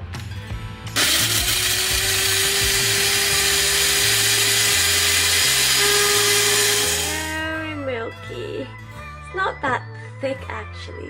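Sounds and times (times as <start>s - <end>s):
blender motor whine: 1.0s - 7.6s.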